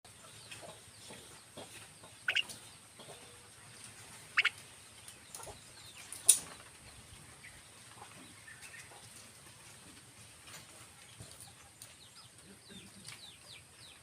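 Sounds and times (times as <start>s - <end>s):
starlings giving harsh alarm calls: 2.3s - 2.5s, 4.4s - 4.6s.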